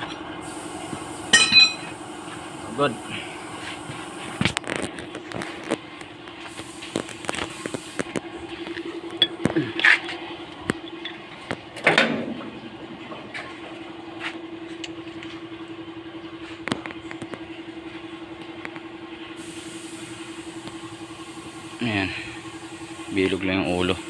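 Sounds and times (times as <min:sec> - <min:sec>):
pulsing machine hum: 0:00.0 - 0:24.0
hand tools clanking on metal: 0:01.3 - 0:02.0.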